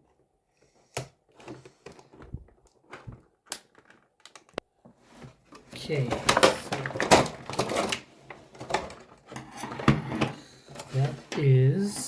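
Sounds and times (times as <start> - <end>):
plastic toy packaging clicks and knocks: 1.0 - 4.7, 5.3 - 10.9.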